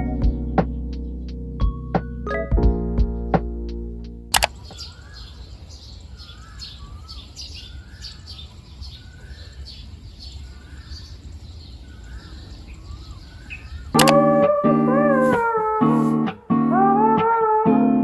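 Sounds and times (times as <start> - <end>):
bird call with falling glide: 4.4 - 16.1
high bird chirping: 4.4 - 16.2
guitar music: 14.0 - 18.0.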